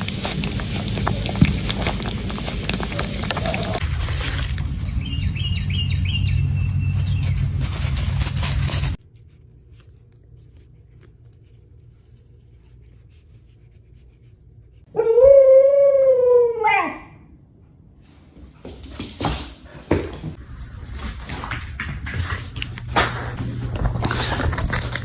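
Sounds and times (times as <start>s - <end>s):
dog howling: 14.9s - 17.3s.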